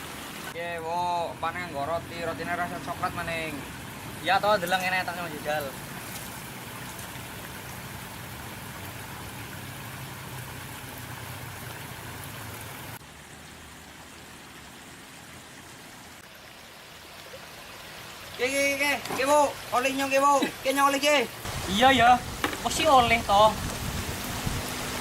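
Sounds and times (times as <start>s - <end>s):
stream water hissing: 0.0s - 25.0s.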